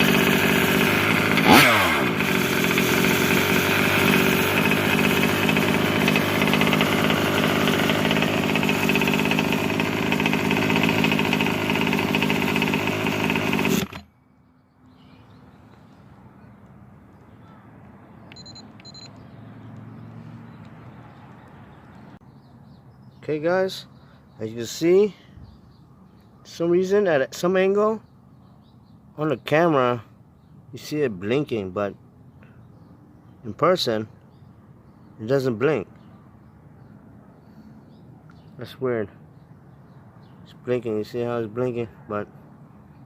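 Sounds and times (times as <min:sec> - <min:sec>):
small two-stroke engine running: 0:00.0 - 0:14.1.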